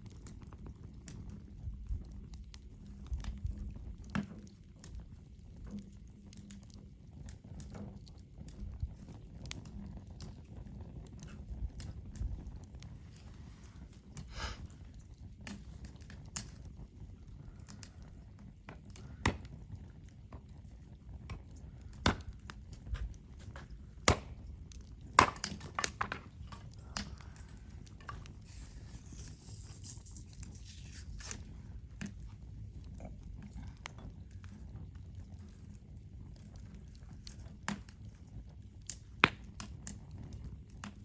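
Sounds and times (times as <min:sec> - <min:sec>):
wood fire crackling and popping: 0:00.0 - 0:41.0
low steady rumble: 0:10.6 - 0:38.6.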